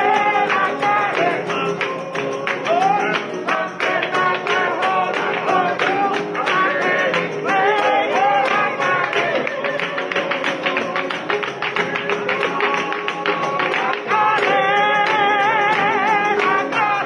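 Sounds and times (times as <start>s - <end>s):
plucked guitar-like accompaniment: 0.0s - 17.0s.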